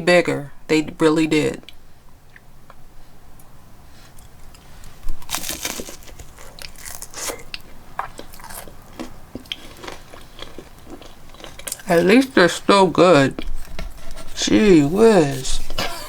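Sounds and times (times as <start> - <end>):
chewing with small crunches: 4.0 - 16.0
crackly crunch of biting: 4.2 - 12.4.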